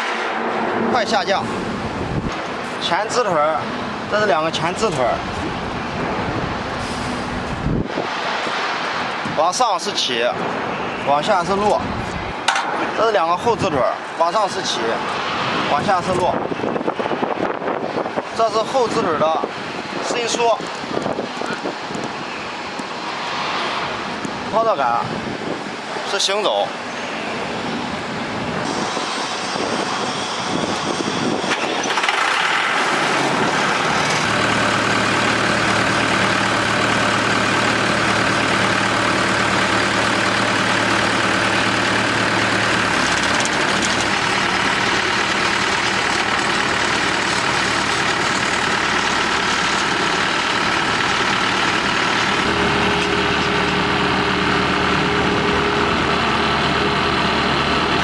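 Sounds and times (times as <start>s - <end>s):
drilling rig engine running: 1.1s - 7.9s, 28.6s - 58.0s.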